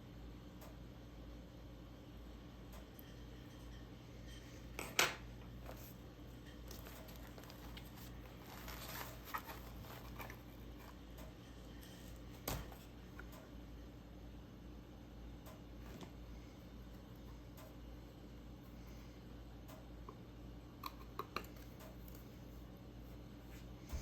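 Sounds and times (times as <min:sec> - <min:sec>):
low steady hum: 0:00.0 - 0:24.0
slime squishing: 0:06.6 - 0:11.1.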